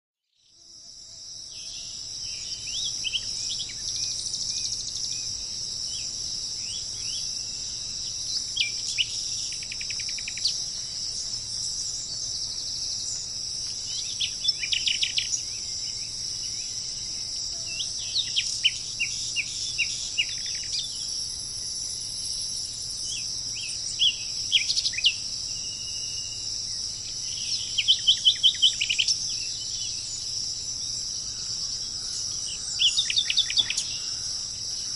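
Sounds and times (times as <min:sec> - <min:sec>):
insects chorus: 0:00.3 - 0:34.9
songbirds chirping: 0:00.4 - 0:34.9.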